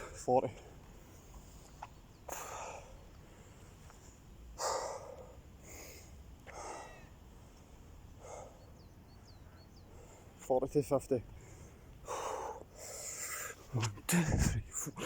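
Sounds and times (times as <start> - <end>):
man breathing hard: 2.3 - 3.7, 4.6 - 7.2, 8.2 - 8.8, 11.3 - 14.4.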